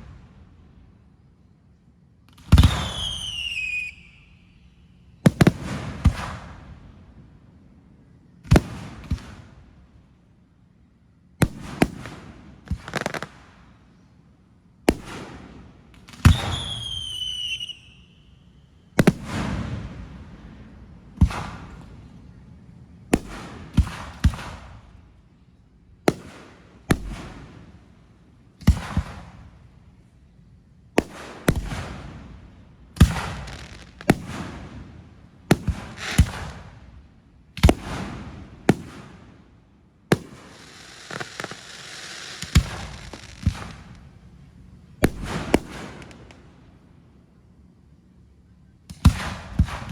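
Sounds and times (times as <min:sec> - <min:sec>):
fireworks bangs with crackle: 0:02.4 - 0:03.9, 0:05.2 - 0:06.8, 0:11.4 - 0:13.6, 0:14.9 - 0:17.9, 0:19.0 - 0:20.1, 0:21.1 - 0:22.0, 0:23.1 - 0:25.0, 0:26.1 - 0:27.7, 0:28.6 - 0:29.6, 0:31.0 - 0:37.0, 0:37.6 - 0:39.4, 0:40.1 - 0:44.3, 0:45.0 - 0:46.5, 0:48.9 - 0:49.9
falling firework whistle: 0:02.5 - 0:04.8, 0:16.2 - 0:18.4.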